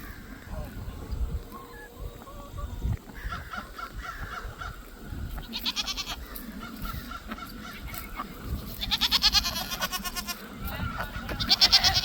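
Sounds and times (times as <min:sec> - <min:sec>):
young farm animal bleating: 0:05.3 - 0:12.0.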